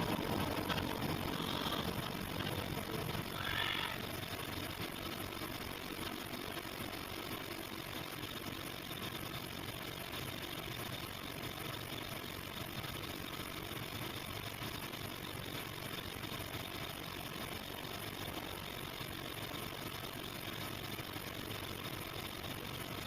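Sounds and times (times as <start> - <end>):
engine idling: 0.0 - 23.0.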